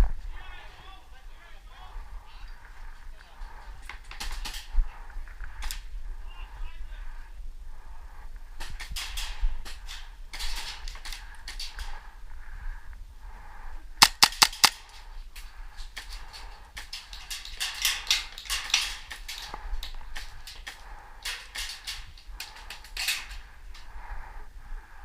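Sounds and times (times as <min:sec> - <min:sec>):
airsoft gun shots: 0:14.0 - 0:14.8.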